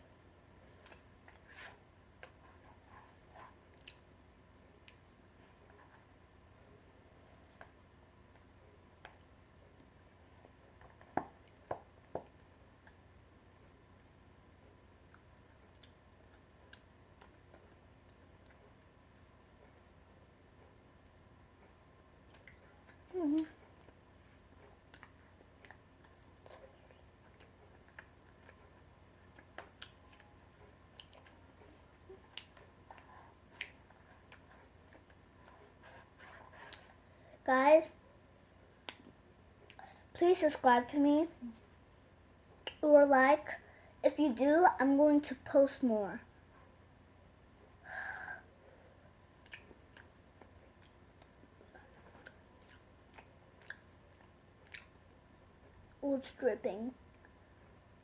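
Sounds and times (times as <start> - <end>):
faint chewing: 0.6 - 4.1, 15.0 - 18.9, 21.6 - 37.2, 38.6 - 40.0, 48.6 - 55.9
soft mouth clicks: 49.4 - 51.4, 52.1 - 55.0.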